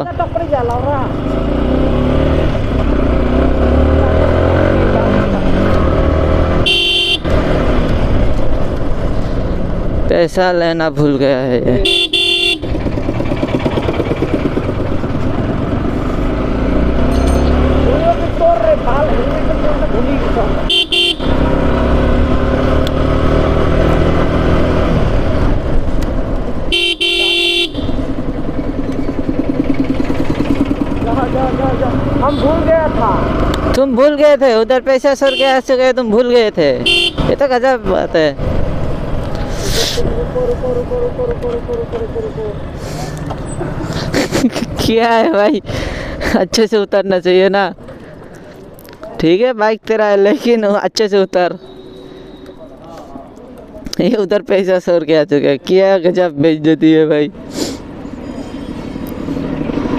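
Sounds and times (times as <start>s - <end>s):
vehicle engines running: 0.0s - 59.9s
short horn beep: 6.6s - 7.3s, 26.7s - 28.0s, 51.6s - 52.8s
vehicle horn honking: 6.6s - 7.4s, 11.8s - 12.8s, 20.6s - 21.5s, 26.7s - 28.1s, 32.2s - 32.7s, 35.2s - 35.6s, 36.8s - 37.4s, 51.6s - 52.8s
motorcycle engine running: 11.6s - 33.9s.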